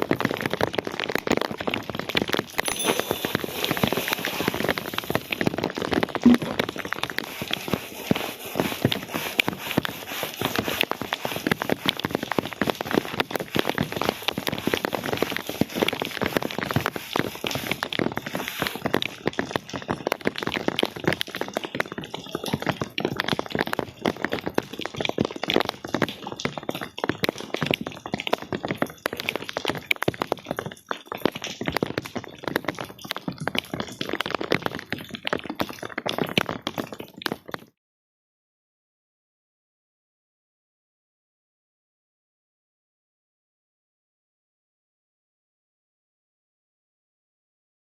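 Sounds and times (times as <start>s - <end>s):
rain: 0.0s - 2.6s, 3.5s - 30.5s
scraping wet carpet by hand: 6.3s - 13.1s, 13.7s - 18.8s.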